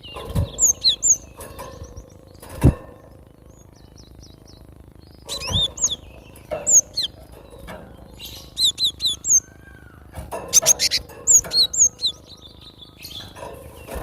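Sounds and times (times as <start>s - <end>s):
bird singing whistled notes: 0.0s - 2.0s, 5.3s - 7.2s, 8.2s - 9.6s, 10.6s - 13.1s.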